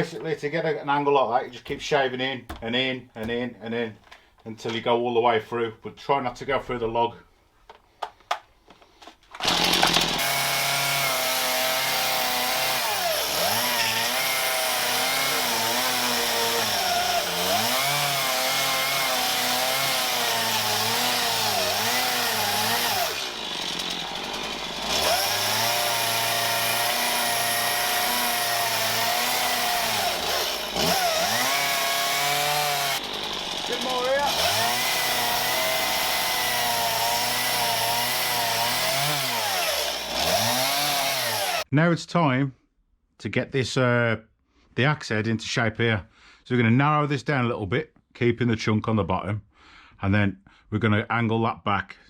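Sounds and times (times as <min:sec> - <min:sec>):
chainsaw cutting wood: 0:09.4 - 0:41.7.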